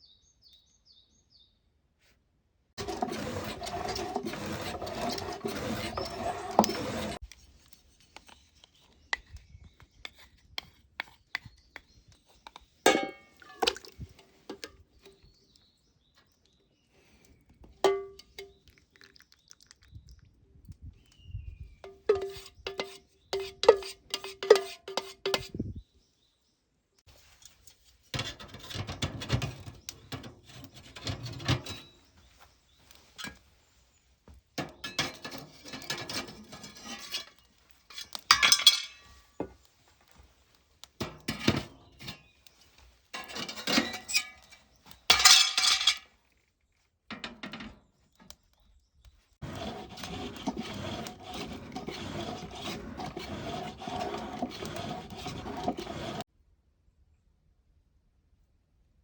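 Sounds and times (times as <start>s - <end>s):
metal scraping and clinking: 2.8s - 7.2s, 27.3s - 32.1s, 34.6s - 39.6s, 41.0s - 46.1s, 49.4s - 56.2s.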